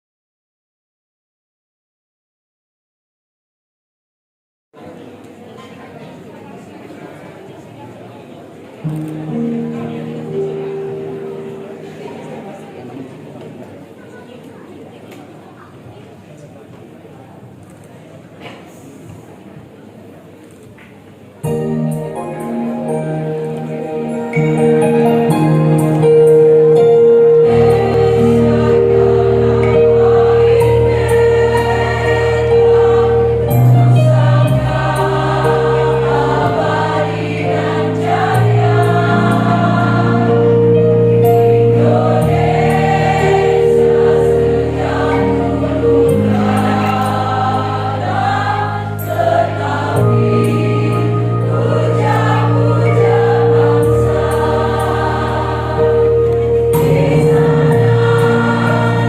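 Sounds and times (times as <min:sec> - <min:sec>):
low accompaniment chords: 0:08.8 - 0:13.1, 0:21.5 - 0:59.0
women's choir singing: 0:27.3 - 0:59.0.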